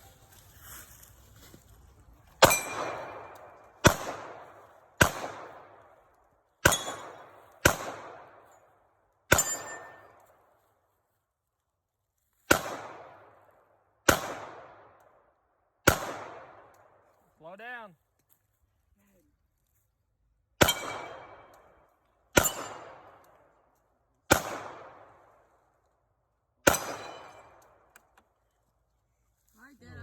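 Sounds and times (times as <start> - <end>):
gunshots with echo: 2.4 - 5.7, 6.6 - 8.4, 14.1 - 14.8, 15.9 - 16.7, 20.6 - 21.5, 22.4 - 23.1, 24.3 - 25.2, 26.6 - 27.6.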